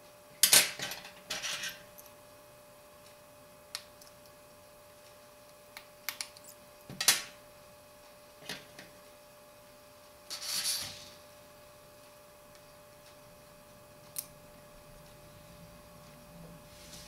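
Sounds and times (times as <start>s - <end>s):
faint steady hum: 0.0s - 17.0s.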